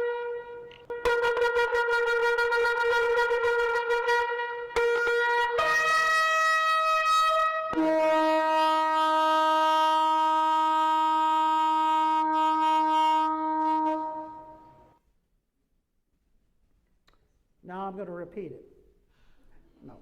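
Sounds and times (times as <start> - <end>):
shofar blowing: 0.0 - 15.0.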